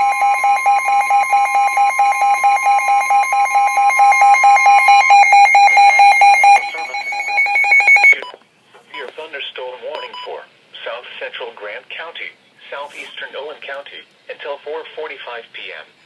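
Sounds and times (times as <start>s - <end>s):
steady alert tone: 0.0s - 8.2s
rapid alert beeping: 0.0s - 8.3s.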